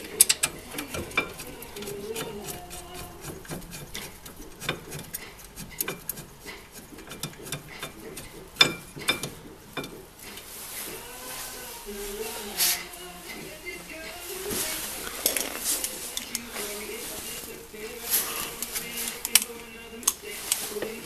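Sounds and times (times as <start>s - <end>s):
metal tools clinking: 0.0s - 3.3s, 14.2s - 21.0s.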